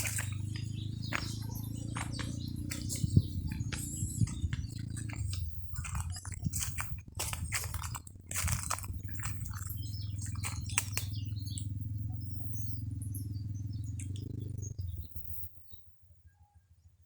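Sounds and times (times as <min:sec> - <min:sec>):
scratchy clicks: 0:00.0 - 0:11.7
high bird chirps: 0:00.0 - 0:15.3
steady low hum: 0:00.0 - 0:15.6.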